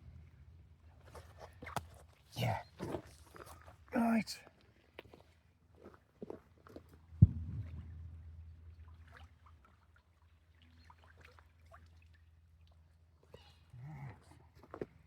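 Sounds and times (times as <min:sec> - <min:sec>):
sharp thump with low rumble: 0:07.2 - 0:08.8.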